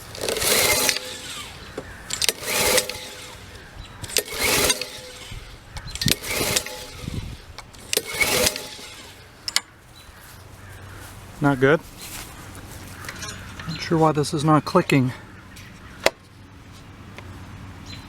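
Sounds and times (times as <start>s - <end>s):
starter rope being yanked: 0.0s - 9.7s
lawn mower engine cranking: 0.0s - 9.9s, 11.4s - 14.9s.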